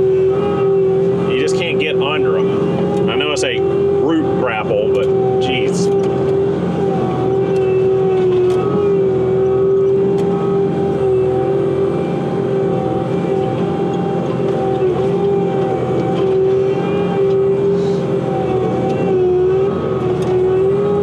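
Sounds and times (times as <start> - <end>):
diesel engine whining at high throttle: 0.0 - 21.0.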